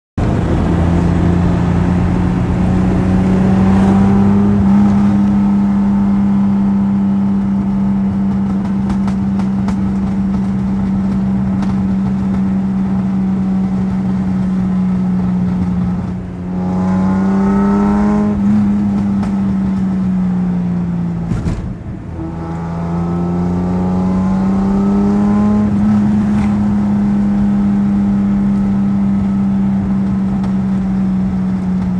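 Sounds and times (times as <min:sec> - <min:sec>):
exhaust pops and crackles: 0:00.2 - 0:16.7, 0:17.8 - 0:22.7, 0:25.5 - 0:31.9
car engine through loud exhaust: 0:00.2 - 0:31.9.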